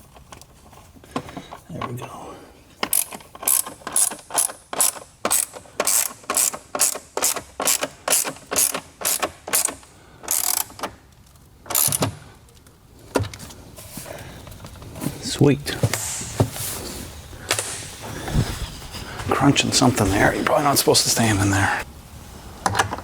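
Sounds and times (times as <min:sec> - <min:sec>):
ratchet wrench clicking: 0:02.8 - 0:10.9, 0:11.7 - 0:12.1.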